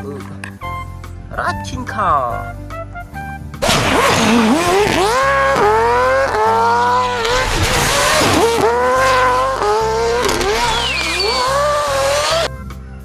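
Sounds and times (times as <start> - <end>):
background music: 0.0 - 13.0
racing car engine revving: 3.6 - 12.5.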